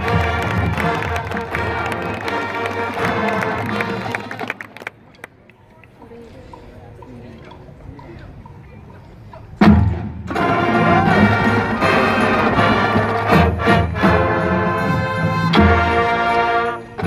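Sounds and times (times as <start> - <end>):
marching band brass chords: 0.0 - 4.6, 9.6 - 17.0
drum strokes: 9.6 - 16.2.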